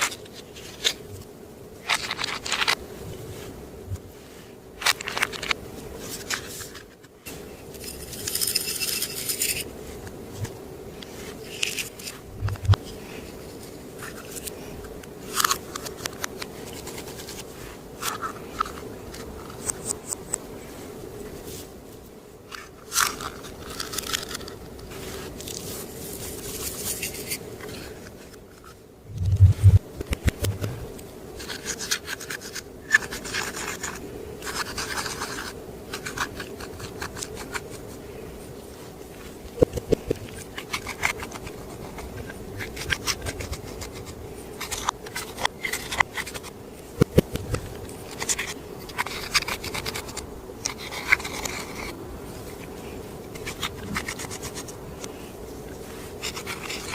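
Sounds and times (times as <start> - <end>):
small sharp clicks and crackles: 0.0 - 2.8, 4.8 - 13.0, 13.6 - 20.5, 22.4 - 38.0, 39.1 - 56.9
slime scratching and scraping: 47.3 - 52.0, 55.9 - 56.9.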